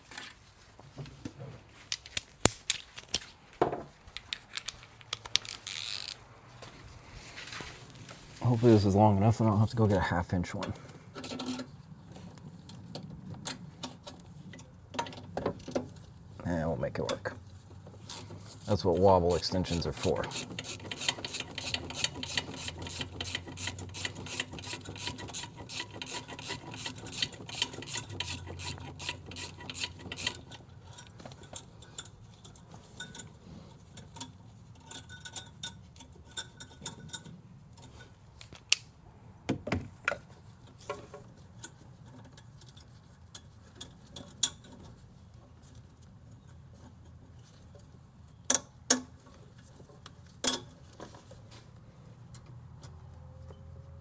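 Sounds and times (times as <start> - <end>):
socket ratchet clicking: 20.3 - 30.5.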